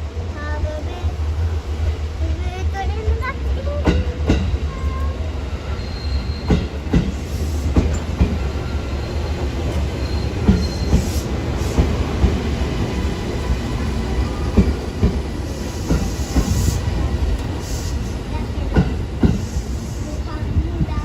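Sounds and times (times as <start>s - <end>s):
train low rumble: 0.0s - 21.0s
faint high wheel squeal: 5.6s - 6.7s, 9.9s - 11.2s
train wheels knocking over rail joints: 6.3s - 8.7s, 9.6s - 13.0s.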